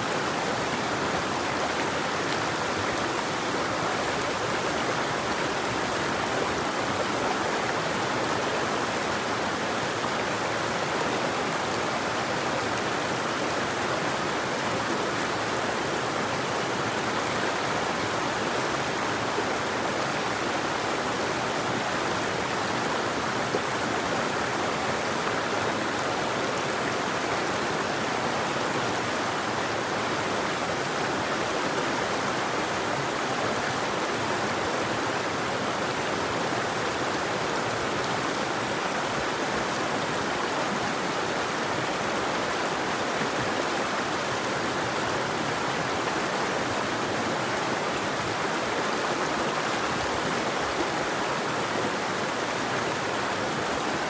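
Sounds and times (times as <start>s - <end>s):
river water rushing: 0.0s - 54.0s.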